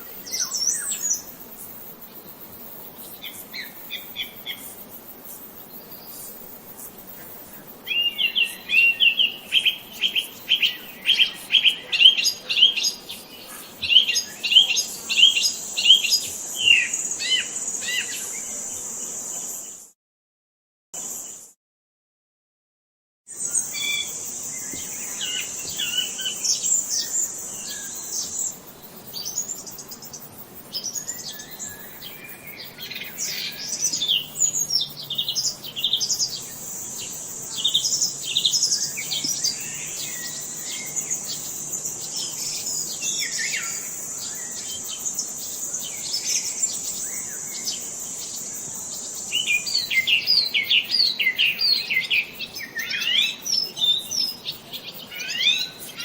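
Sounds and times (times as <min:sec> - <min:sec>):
high-pitched insect buzz: 0:00.0 - 0:20.0, 0:23.3 - 0:56.0
songbirds chirping and singing: 0:07.6 - 0:18.5, 0:23.6 - 0:56.0.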